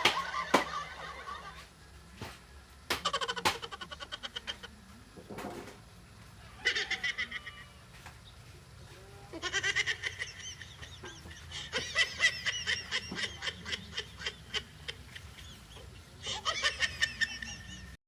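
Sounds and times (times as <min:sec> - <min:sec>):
high-pitched cackling laugh: 0:00.0 - 0:01.7, 0:02.9 - 0:04.9, 0:06.6 - 0:07.8, 0:09.3 - 0:18.0.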